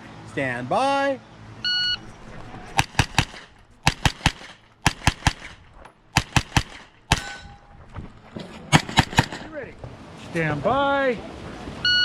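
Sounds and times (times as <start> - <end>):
rapid gunshots: 2.8 - 7.4, 8.7 - 9.5.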